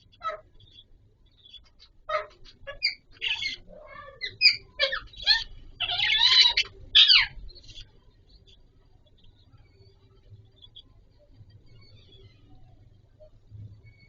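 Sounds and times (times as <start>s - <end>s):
budgies squawking and chirping: 0.0s - 8.6s.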